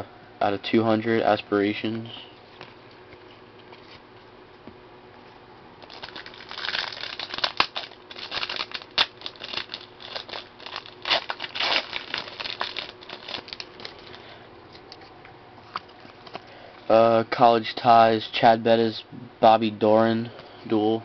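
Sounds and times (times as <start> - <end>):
card pack wrapper crinkling: 5.8 - 14.2.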